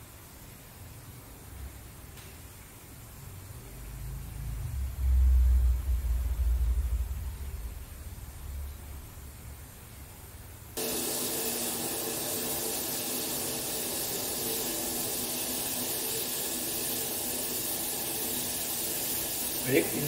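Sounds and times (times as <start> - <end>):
gas flame hissing: 0.0 - 20.0
water starting to boil: 10.6 - 20.0.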